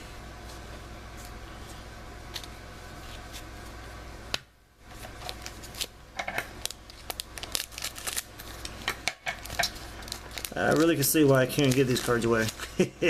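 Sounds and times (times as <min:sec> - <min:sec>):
steady low hum: 0:00.0 - 0:13.0
cards clicking and rustling: 0:05.0 - 0:12.8.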